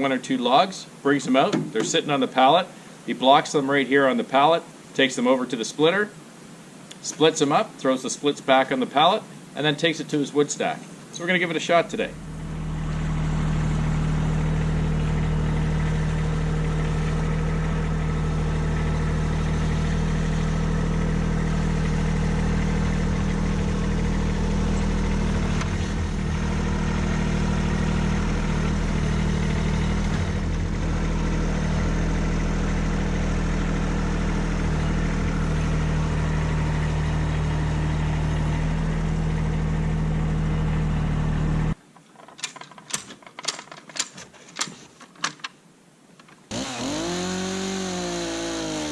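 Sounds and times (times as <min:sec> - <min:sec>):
tractor diesel engine running: 0:12.0 - 0:41.8, 0:46.5 - 0:48.9.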